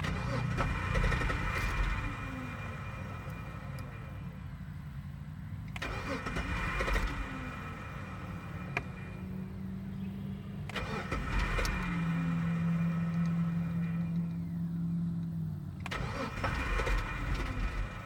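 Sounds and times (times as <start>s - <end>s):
engine cranking on starter: 0.0s - 4.1s, 5.6s - 9.2s, 10.6s - 18.0s.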